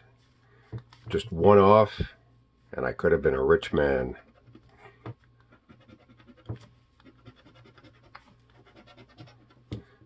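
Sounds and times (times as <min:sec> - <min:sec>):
scratching lottery ticket: 0:05.6 - 0:09.6.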